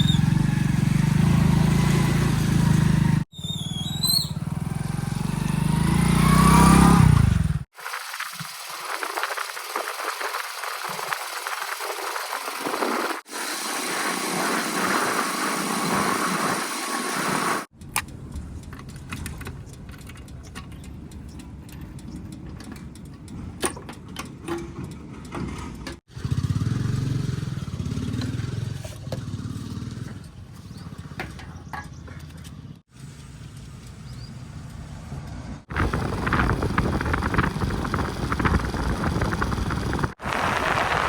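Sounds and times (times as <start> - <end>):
hiss: 7.7 - 17.7, 35.7 - 41.0
diesel engine running: 33.0 - 40.2.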